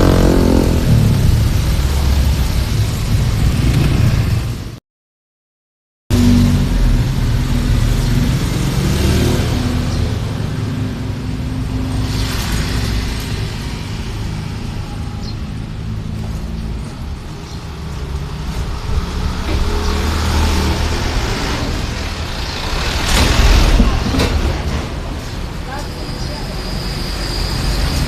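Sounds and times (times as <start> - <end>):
road traffic engines: 0.0 - 4.8, 6.1 - 28.0
vehicle passing close: 6.1 - 28.0.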